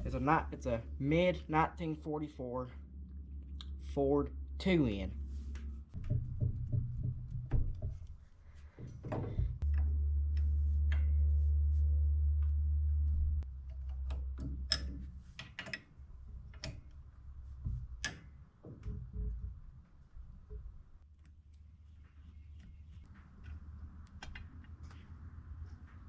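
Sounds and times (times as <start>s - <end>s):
steady low rumble: 0.0s - 15.4s.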